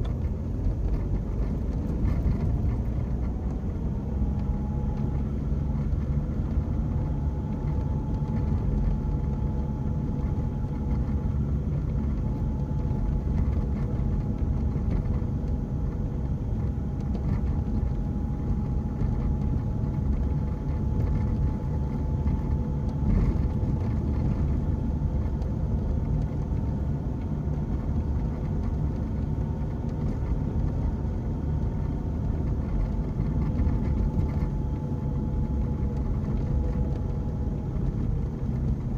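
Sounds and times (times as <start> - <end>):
road and engine rumble: 0.0 - 38.9.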